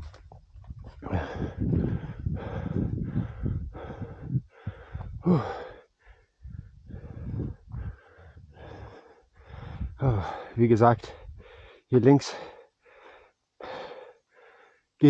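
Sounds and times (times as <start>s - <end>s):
man breathing heavily: 0.8s - 15.0s
voiced sigh: 1.0s - 5.9s, 6.9s - 10.6s.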